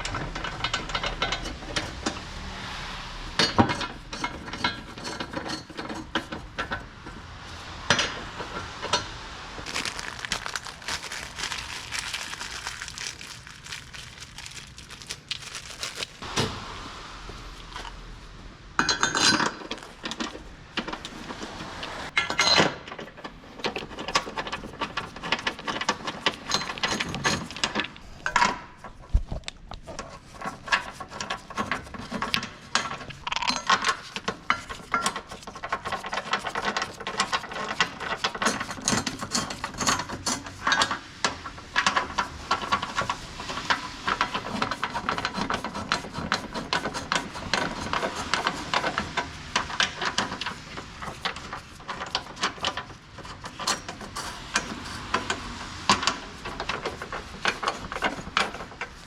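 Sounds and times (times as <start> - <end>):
metallic clicks and clatter: 22.2 - 59.0.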